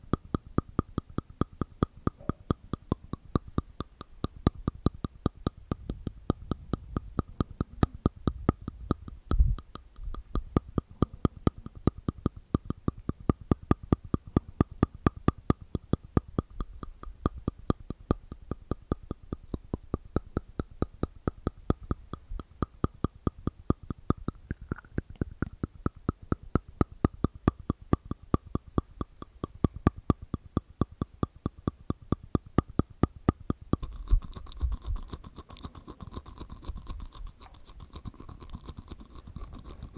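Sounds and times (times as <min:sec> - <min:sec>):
wet mouth clicks: 0:00.0 - 0:39.9.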